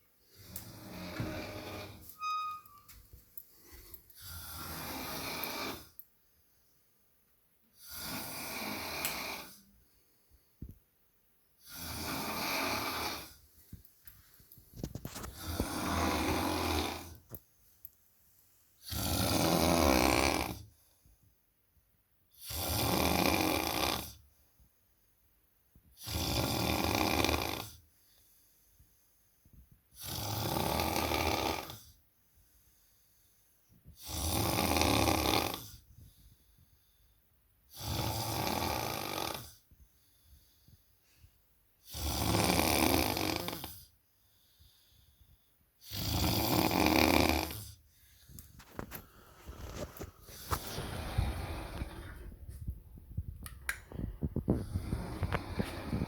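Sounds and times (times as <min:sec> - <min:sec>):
man snoring: 0:00.6 - 0:02.0, 0:04.3 - 0:05.9, 0:07.8 - 0:09.6, 0:11.7 - 0:13.4, 0:15.4 - 0:17.2, 0:18.8 - 0:20.6, 0:22.4 - 0:24.2, 0:26.0 - 0:27.8, 0:30.0 - 0:31.9, 0:34.0 - 0:35.8, 0:37.7 - 0:39.6, 0:41.9 - 0:43.9, 0:45.8 - 0:47.8, 0:50.6 - 0:52.2, 0:54.5 - 0:56.0.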